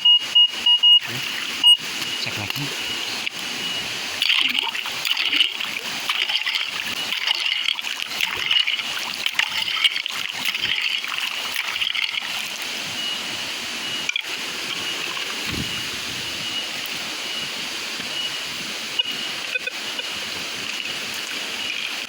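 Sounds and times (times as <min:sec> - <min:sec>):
metal detector high tone: 0:00.0 - 0:05.5, 0:12.7 - 0:22.0
river water splashing: 0:01.0 - 0:22.0.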